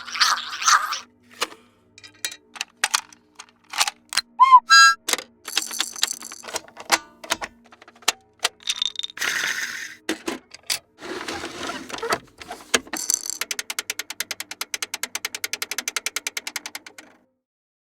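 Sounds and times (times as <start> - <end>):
toy whirring: 0.0 - 1.0, 2.6 - 6.6, 8.6 - 10.0, 11.0 - 17.0
plastic toy clicks and rattles: 0.0 - 17.2
fast even ratchet clicks: 13.0 - 17.0.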